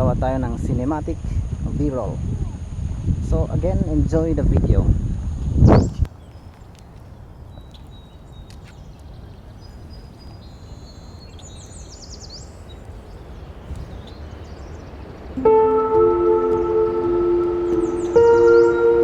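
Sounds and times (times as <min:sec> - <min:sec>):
small birds chirping: 0:05.7 - 0:15.0
low background noise: 0:06.1 - 0:19.0.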